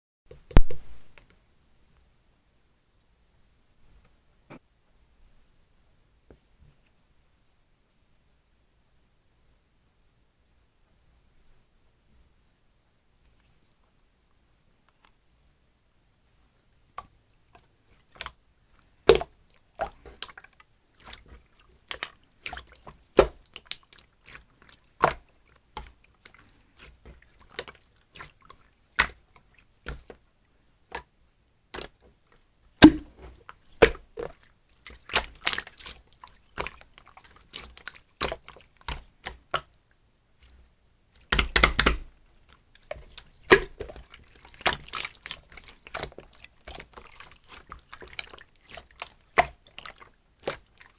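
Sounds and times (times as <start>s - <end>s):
slime squished by hand: 17.9s - 30.2s, 32.8s - 39.8s, 40.4s - 50.9s.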